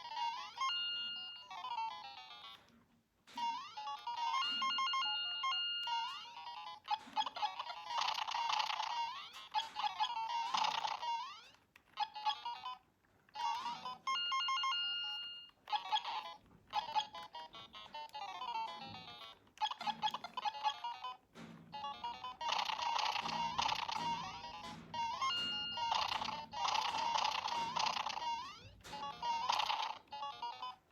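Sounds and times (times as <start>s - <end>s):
electronic beeping melody: 3.3s - 6.4s.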